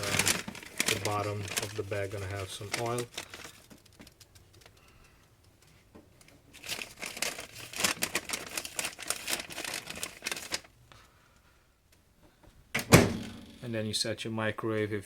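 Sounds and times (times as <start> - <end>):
paper crinkling and rustling: 0.0 - 4.9, 5.7 - 10.7.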